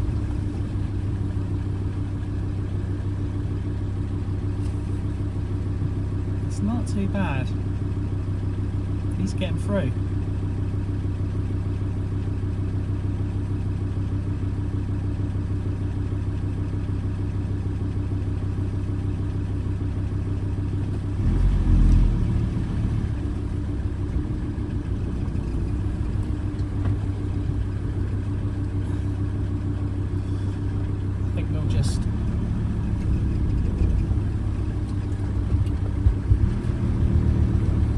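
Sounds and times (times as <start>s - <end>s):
low rumble: 0.0s - 2.4s, 21.9s - 37.9s
van engine idling: 0.0s - 37.9s.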